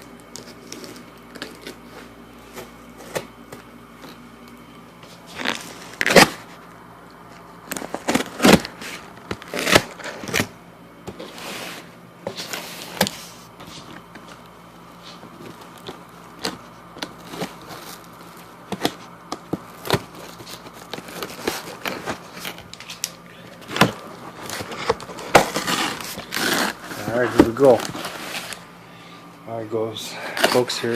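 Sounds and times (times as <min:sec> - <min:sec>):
box cutter slitting tape: 0:05.4 - 0:06.4, 0:07.7 - 0:10.5, 0:19.8 - 0:28.6
cardboard clicks and scrapes: 0:18.7 - 0:28.6.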